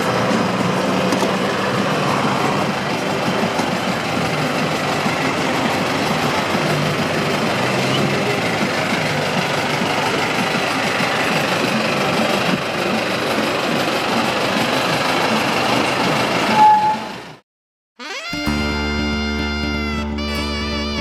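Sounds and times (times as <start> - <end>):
street traffic: 0.0 - 17.4
plucked string music: 18.0 - 21.0
short high beep: 18.0 - 21.0.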